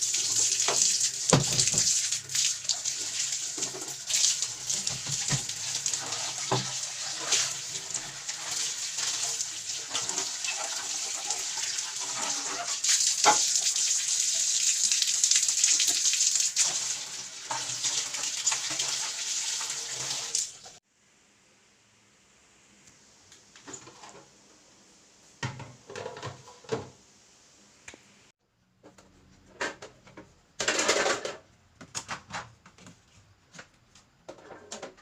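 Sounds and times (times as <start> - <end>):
tap water running into sink: 0.0 - 20.8
things clattering in sink: 0.2 - 13.7, 15.7 - 20.4, 23.6 - 24.3, 25.4 - 27.0, 29.5 - 33.0, 34.2 - 35.0.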